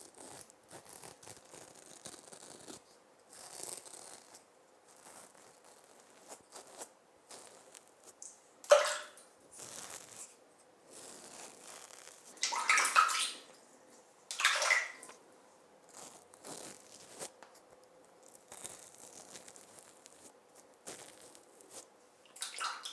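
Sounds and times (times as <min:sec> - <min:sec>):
razor scraping strokes: 0:00.2 - 0:07.8, 0:10.9 - 0:12.4
water splashing: 0:08.6 - 0:09.2, 0:12.4 - 0:13.6, 0:14.3 - 0:15.1, 0:22.3 - 0:22.9.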